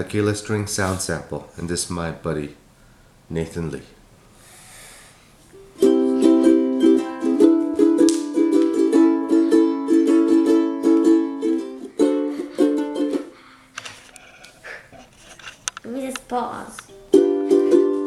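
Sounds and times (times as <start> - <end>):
ukulele strummed chords: 5.6 - 13.4, 16.9 - 18.0.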